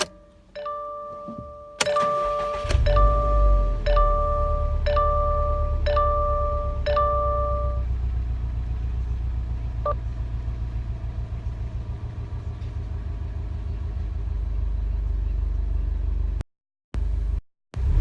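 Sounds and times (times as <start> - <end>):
car engine idling: 0.0 - 16.4
short chime: 0.1 - 7.8.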